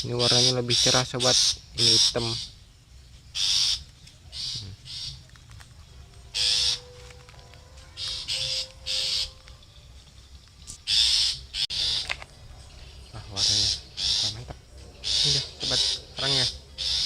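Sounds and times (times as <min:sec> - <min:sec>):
shrikes giving harsh calls: 0:00.0 - 0:02.7, 0:06.3 - 0:10.0, 0:10.7 - 0:17.0.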